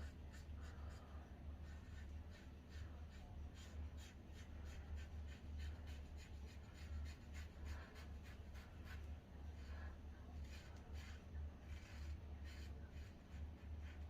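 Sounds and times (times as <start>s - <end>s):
steady low hum: 0.0s - 14.0s
razor scraping through stubble: 10.4s - 14.0s.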